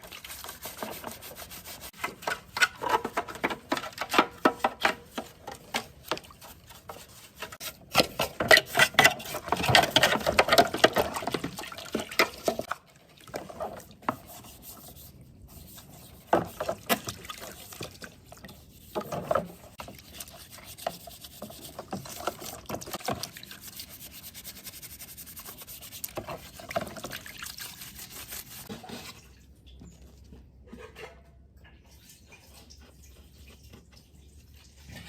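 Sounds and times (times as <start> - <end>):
wet hand scrubbing: 19.8 - 29.2.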